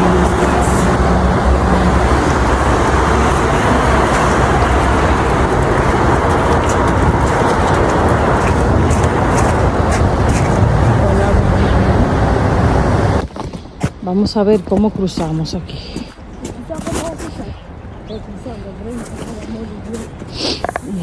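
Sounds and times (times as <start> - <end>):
steady engine tone: 0.0 - 13.3
vehicle engines humming: 0.0 - 13.4.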